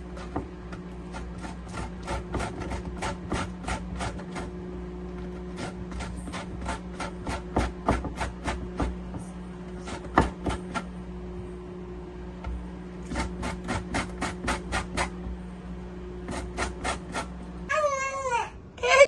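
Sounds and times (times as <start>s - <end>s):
utensil scraping lemons: 0.0s - 11.0s, 12.9s - 15.4s, 16.1s - 17.7s.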